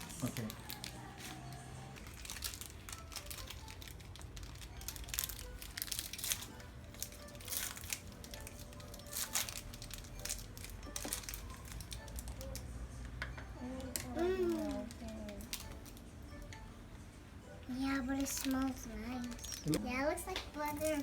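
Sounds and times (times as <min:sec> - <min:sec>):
plastic wrapper tearing and crinkling: 0:00.0 - 0:12.6, 0:14.0 - 0:16.0, 0:18.2 - 0:19.8.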